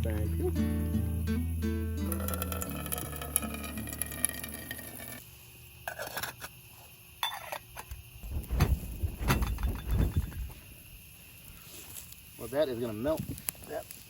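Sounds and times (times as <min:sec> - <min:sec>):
background music: 0:00.0 - 0:03.7
cookware clinking and knocking: 0:02.1 - 0:05.2.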